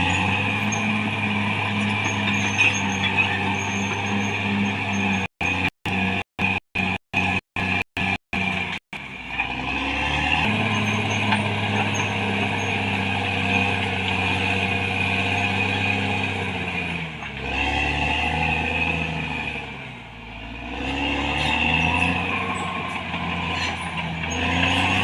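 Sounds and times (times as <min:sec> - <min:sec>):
bulldozer diesel engine running: 0:00.0 - 0:25.0.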